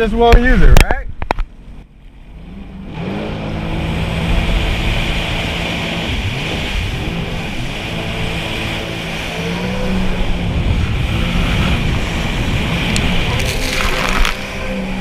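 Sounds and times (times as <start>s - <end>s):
wind and water rushing: 0.0s - 15.0s
jet ski engine running: 1.2s - 15.0s.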